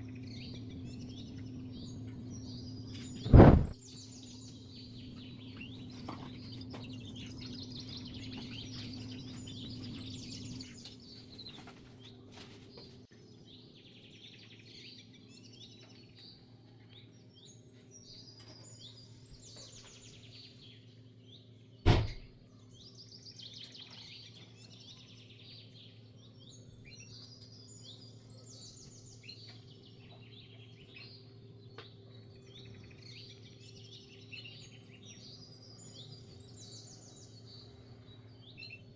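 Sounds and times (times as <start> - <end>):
steady low hum: 0.0 - 11.2
small birds chirping: 0.0 - 38.9
loud knock: 21.9 - 22.2.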